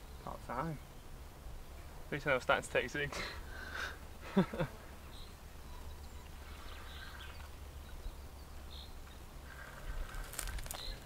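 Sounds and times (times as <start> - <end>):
faint bird chirps: 4.0 - 11.0.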